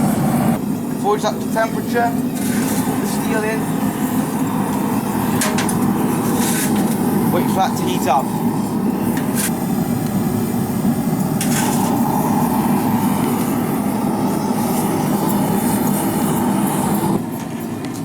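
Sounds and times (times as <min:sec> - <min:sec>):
forge burner rushing: 0:00.0 - 0:18.0.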